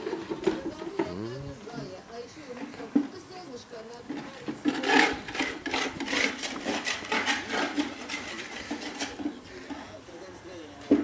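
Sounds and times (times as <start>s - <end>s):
hand tool scraping mortar: 4.6s - 9.4s.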